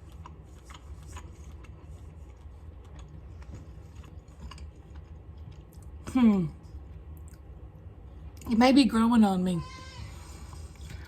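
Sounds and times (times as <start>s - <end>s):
person chewing: 0.0s - 6.1s.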